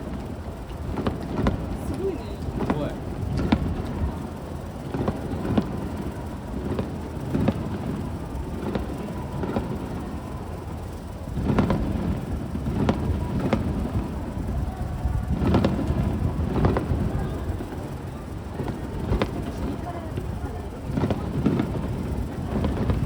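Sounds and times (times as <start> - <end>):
fireworks bursting: 0.0 - 23.0.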